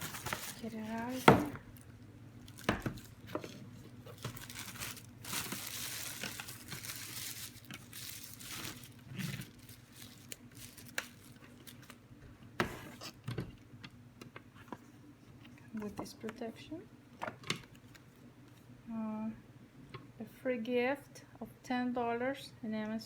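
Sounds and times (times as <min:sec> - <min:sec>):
packaging rustling and crinkling: 0:00.0 - 0:12.0.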